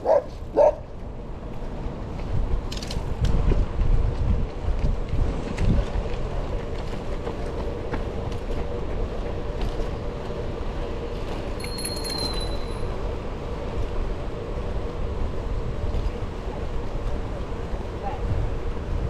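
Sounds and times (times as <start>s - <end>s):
bicycle tyres rolling on trail: 1.0s - 19.0s
wind on microphone: 2.0s - 7.4s.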